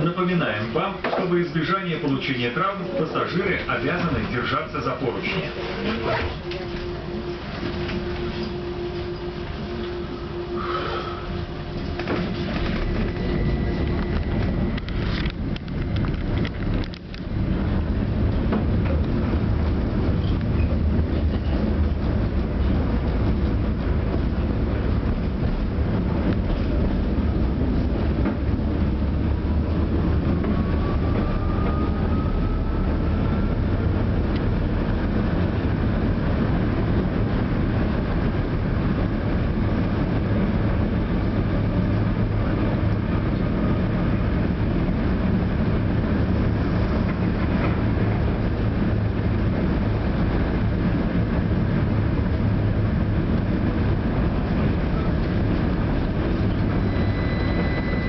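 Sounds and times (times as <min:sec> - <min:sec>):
tram wheels rumbling on rails: 0:00.0 - 0:58.0
faint rising whine: 0:03.8 - 0:18.1.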